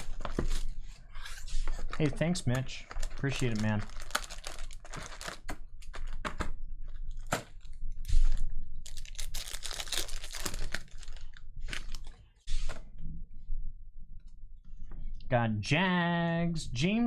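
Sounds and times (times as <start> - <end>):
foil wrappers crinkling and tearing: 1.8 - 6.2, 8.8 - 12.2.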